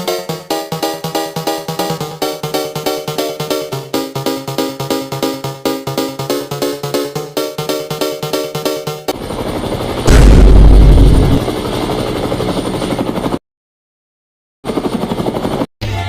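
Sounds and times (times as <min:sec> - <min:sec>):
helicopter rotor chopping whir: 0:00.1 - 0:13.4, 0:14.6 - 0:15.7
loud deep blast: 0:10.1 - 0:11.5.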